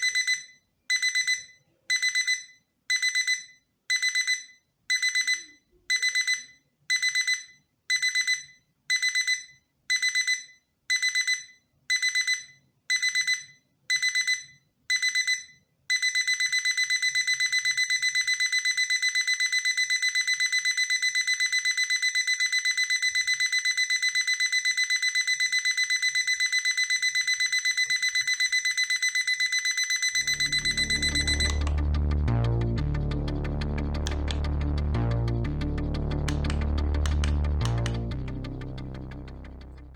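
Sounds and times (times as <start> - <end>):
high-pitched alarm clock beeping: 0.0 - 34.7
low tune: 30.2 - 39.9.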